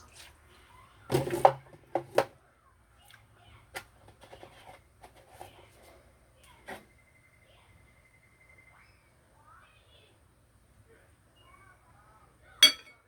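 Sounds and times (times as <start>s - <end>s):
kitchenware clattering: 12.6s - 13.0s.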